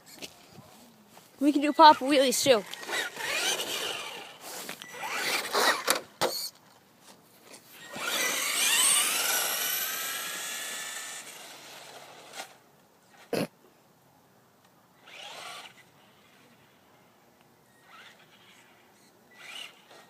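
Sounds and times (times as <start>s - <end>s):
electric motor whining: 7.8s - 12.5s.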